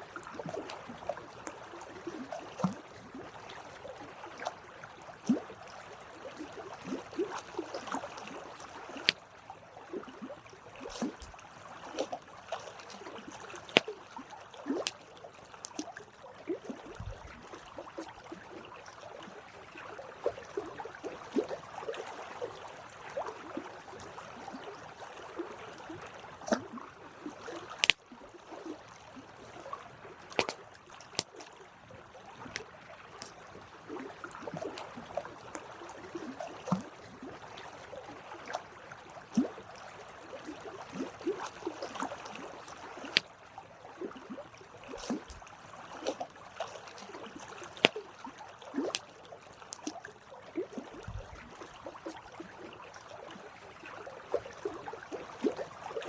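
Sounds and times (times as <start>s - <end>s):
campfire crackling and popping: 27.8s - 28.0s.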